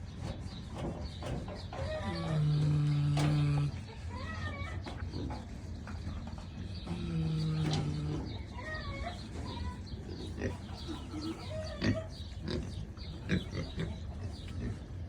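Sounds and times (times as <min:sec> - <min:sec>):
pig snoring: 0:02.0 - 0:03.8, 0:06.7 - 0:08.3.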